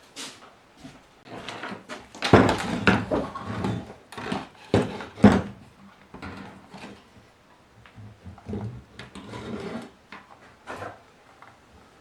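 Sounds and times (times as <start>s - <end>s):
hard objects knocking and clattering: 1.4s - 5.6s.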